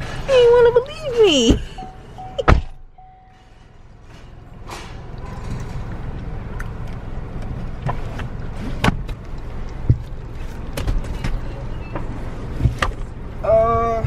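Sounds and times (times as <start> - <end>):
car rumbling: 0.0 - 14.0
knocks and thumps: 9.8 - 10.1, 12.0 - 13.1.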